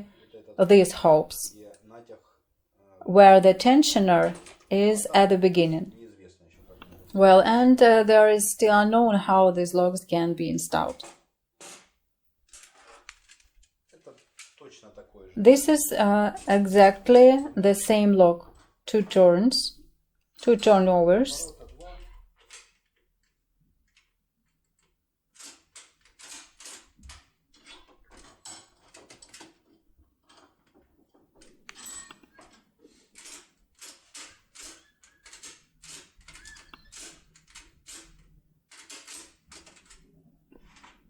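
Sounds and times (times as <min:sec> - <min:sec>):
lockpicking tools clicking and rattling: 0:12.5 - 0:14.6, 0:22.4 - 0:23.0, 0:24.7 - 0:41.0.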